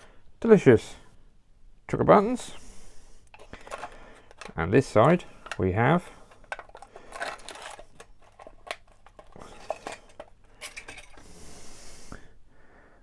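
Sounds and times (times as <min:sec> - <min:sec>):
plastic packet crinkling: 0:03.3 - 0:11.2
wrapper rustling: 0:03.3 - 0:11.2.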